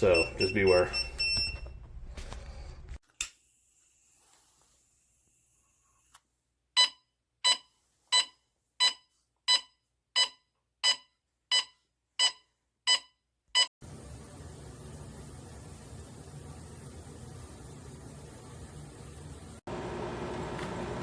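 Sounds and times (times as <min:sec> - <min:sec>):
gas detector alarm beeping: 0:00.0 - 0:01.8, 0:06.8 - 0:13.7.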